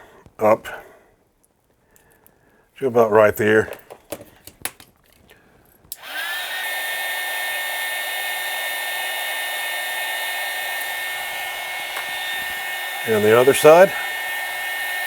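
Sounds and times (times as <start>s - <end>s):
heat gun fan blowing: 5.9s - 15.0s
heat gun switch click: 8.4s - 15.0s.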